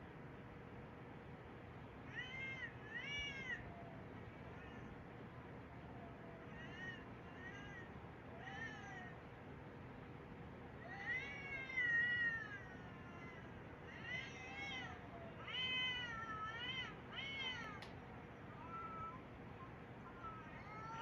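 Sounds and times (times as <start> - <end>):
cats meowing: 2.1 - 3.8, 4.4 - 5.0, 6.0 - 9.2, 10.8 - 19.3, 20.0 - 21.0.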